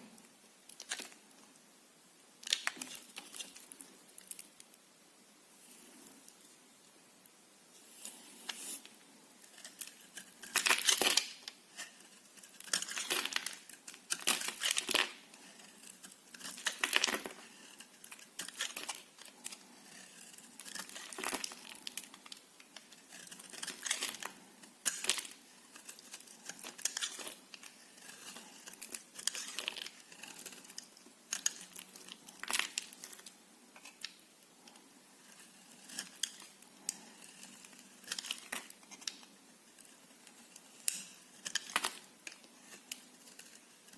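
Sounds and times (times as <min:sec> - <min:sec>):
knife cutting soap: 0:09.5 - 0:34.2, 0:35.2 - 0:43.9.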